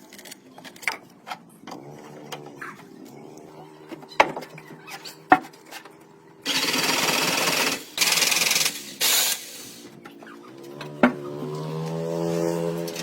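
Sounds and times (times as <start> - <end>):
power tool bursts: 6.4 - 9.8.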